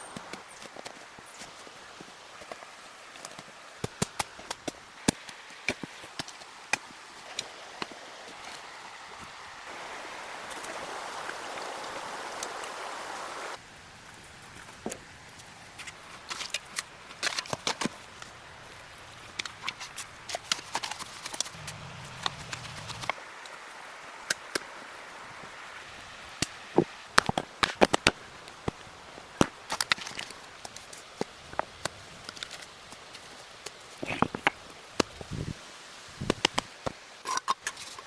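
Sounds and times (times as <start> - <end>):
steady hiss: 0.0 - 38.0
loud hiss: 20.8 - 29.2.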